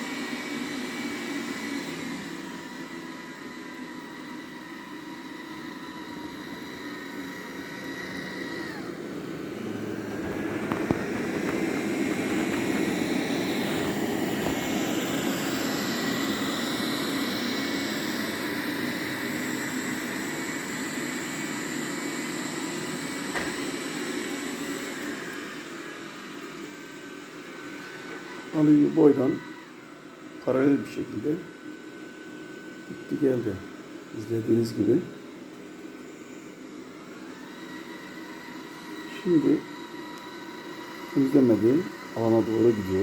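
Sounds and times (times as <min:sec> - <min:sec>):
robot vacuum fan whine: 0:00.0 - 0:43.0.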